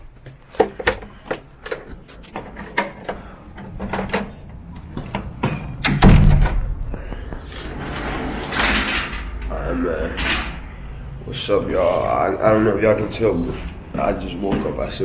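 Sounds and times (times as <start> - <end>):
sharp clicks and knocks: 0.2 - 9.5
heavy low thump: 5.0 - 8.5.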